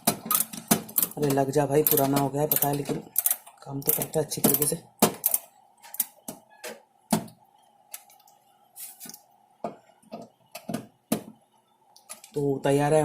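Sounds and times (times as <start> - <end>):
metal parts clicking and knocking: 0.0 - 6.2.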